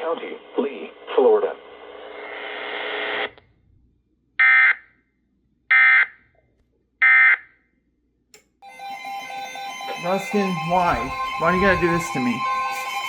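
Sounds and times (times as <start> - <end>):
digital data bursts: 10.1 - 13.0.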